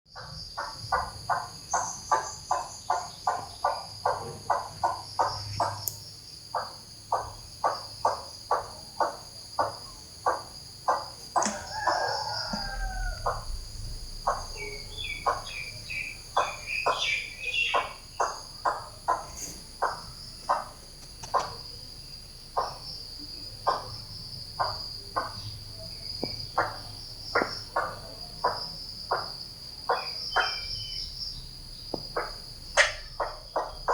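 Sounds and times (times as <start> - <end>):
crickets trilling: 0.1 - 33.9
small bird chirps: 0.2 - 13.6, 14.2 - 33.9.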